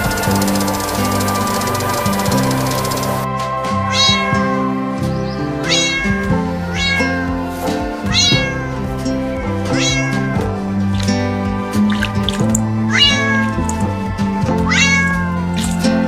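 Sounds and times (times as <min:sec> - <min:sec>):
background music: 0:00.0 - 0:16.0
cat meowing: 0:03.8 - 0:04.7, 0:05.6 - 0:07.4, 0:08.0 - 0:11.1, 0:12.9 - 0:13.8, 0:14.6 - 0:15.8.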